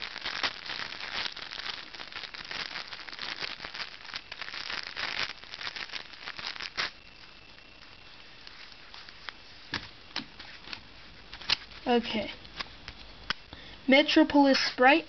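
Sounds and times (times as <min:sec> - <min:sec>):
plastic wrapper crinkling: 0:00.0 - 0:13.6.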